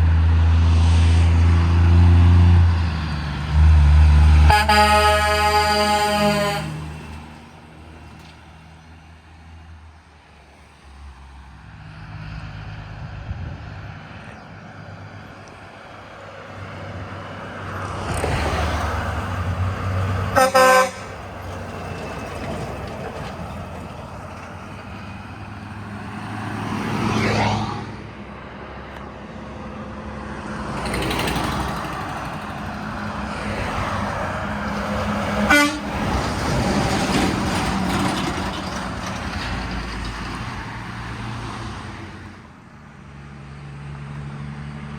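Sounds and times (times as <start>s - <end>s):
trucks passing on a road: 0.0s - 44.9s
truck horn honking: 4.4s - 7.1s, 20.3s - 21.3s, 35.0s - 36.2s.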